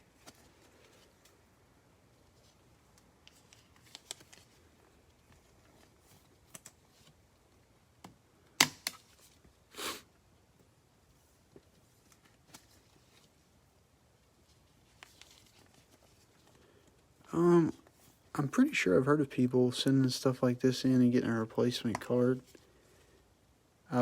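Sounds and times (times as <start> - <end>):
cards clicking and tapping: 8.0 - 9.1.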